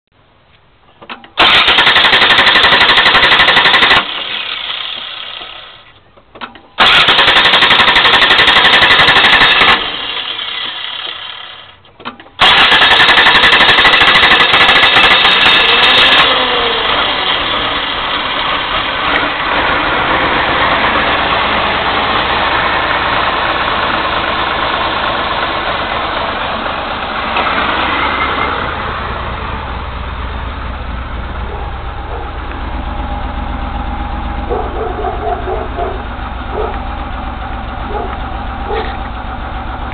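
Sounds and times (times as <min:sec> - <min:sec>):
car starter cranking: 0:01.0 - 0:19.8
car engine running: 0:12.4 - 0:39.9.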